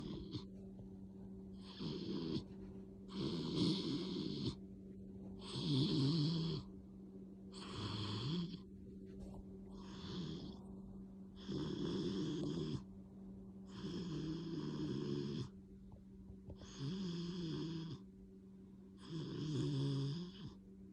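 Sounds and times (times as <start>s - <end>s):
dog snoring loudly: 0.0s - 0.5s, 1.6s - 4.6s, 5.4s - 6.7s, 7.5s - 8.6s, 9.7s - 10.7s, 11.4s - 12.9s, 13.7s - 15.5s, 16.5s - 18.1s, 19.0s - 20.6s.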